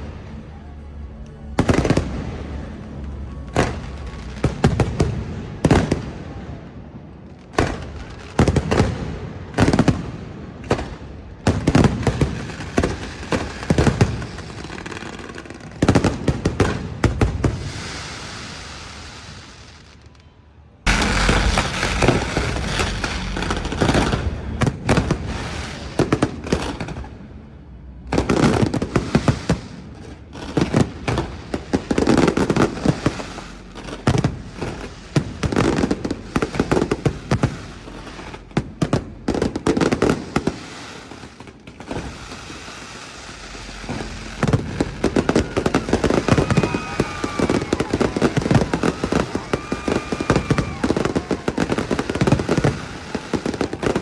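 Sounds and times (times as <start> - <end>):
firework crackling: 0.0 - 54.0
firework shells bursting: 20.9 - 27.1, 30.7 - 54.0.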